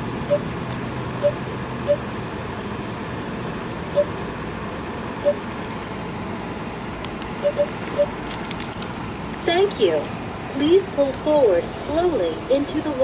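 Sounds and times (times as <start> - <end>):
steady background rumble: 0.0 - 13.0
keypad beeping: 0.3 - 0.5, 1.2 - 2.0, 3.9 - 4.2, 5.2 - 5.4, 7.4 - 8.2.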